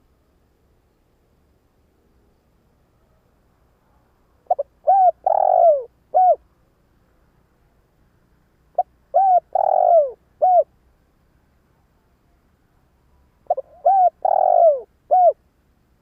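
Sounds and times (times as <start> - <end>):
dove cooing: 4.4 - 6.4, 8.7 - 10.7, 13.5 - 15.4.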